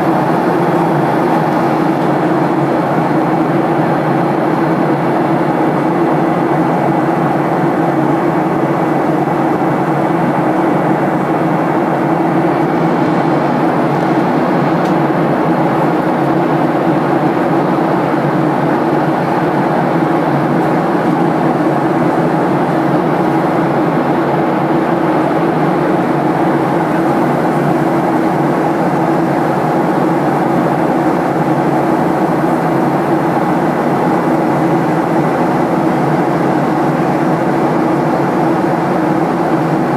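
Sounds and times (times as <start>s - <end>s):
airplane cabin engine rush: 0.0s - 39.9s.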